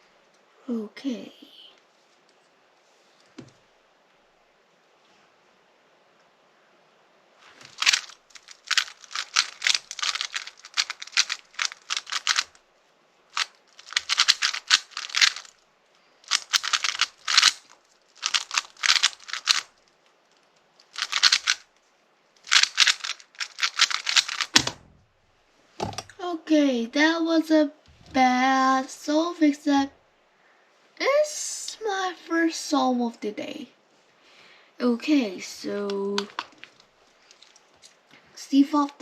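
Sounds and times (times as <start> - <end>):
plastic puzzle cube clicking: 7.7 - 12.6, 13.4 - 15.5, 16.3 - 19.7, 20.8 - 21.6, 22.5 - 24.8
low thump: 24.6 - 25.1.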